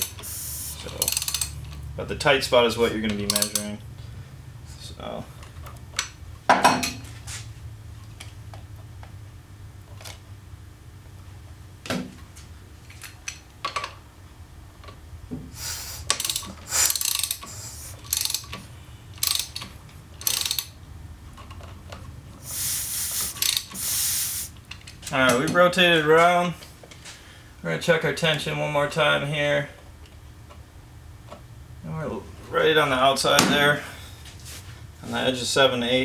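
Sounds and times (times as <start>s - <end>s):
ratchet clicking: 0.0s - 1.8s, 3.1s - 3.7s, 15.6s - 18.6s, 19.2s - 20.8s, 22.4s - 24.6s.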